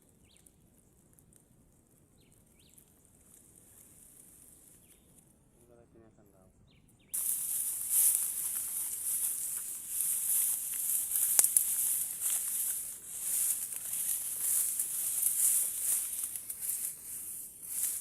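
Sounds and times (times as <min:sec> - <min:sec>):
high-pitched insect chorus: 0:07.2 - 0:18.0
light rustling: 0:07.2 - 0:18.0.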